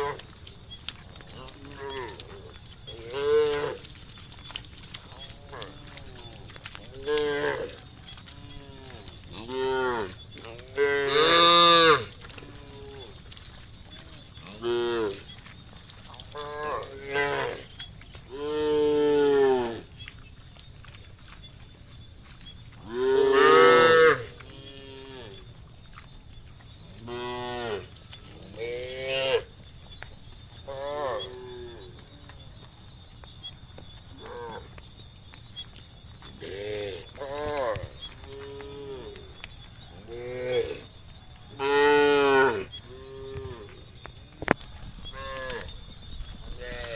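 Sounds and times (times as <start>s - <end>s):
cows mooing: 1.2s - 4.0s, 5.1s - 13.2s, 14.4s - 15.2s, 16.3s - 17.7s, 22.8s - 25.4s, 41.6s - 43.8s, 45.1s - 45.7s, 46.6s - 46.9s.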